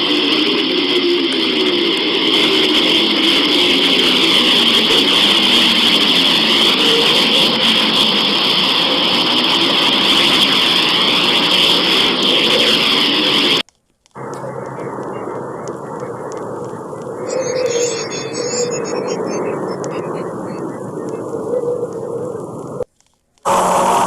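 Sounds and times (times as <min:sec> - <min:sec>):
whooshing drone with swirling sweeps: 0:00.0 - 0:13.6, 0:14.2 - 0:22.8, 0:23.5 - 0:24.0.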